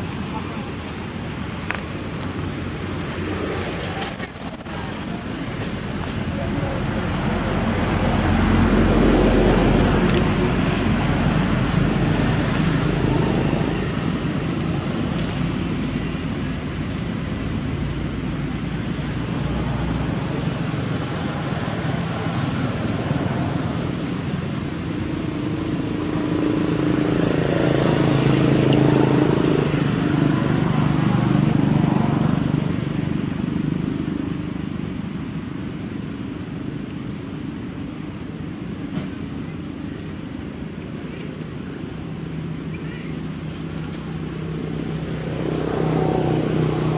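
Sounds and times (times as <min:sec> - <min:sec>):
high-pitched hiss: 0:00.0 - 0:46.9
low traffic rumble: 0:00.0 - 0:46.9.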